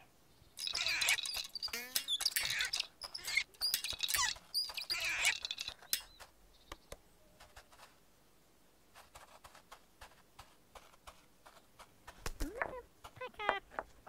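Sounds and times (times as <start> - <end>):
squeaky chirps and gliding squeals: 0.5 - 6.2
sharp clicks: 0.6 - 7.0.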